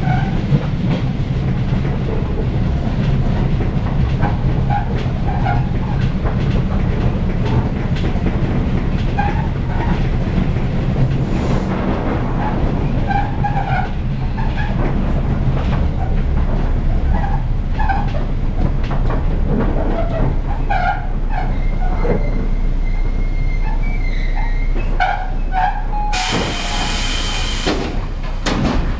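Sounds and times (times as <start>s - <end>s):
train running rumble: 0.0s - 28.9s
compressed air hiss: 26.2s - 28.0s.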